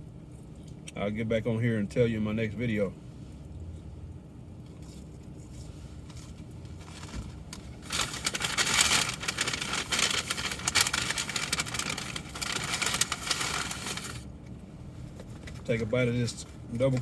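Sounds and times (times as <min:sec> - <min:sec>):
paper bag rustling: 0:05.5 - 0:14.2.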